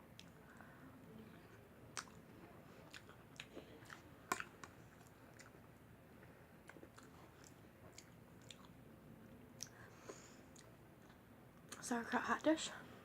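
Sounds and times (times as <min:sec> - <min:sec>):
person chewing food: 0:01.2 - 0:11.3
wet mouth clicks and smacks: 0:02.9 - 0:05.5.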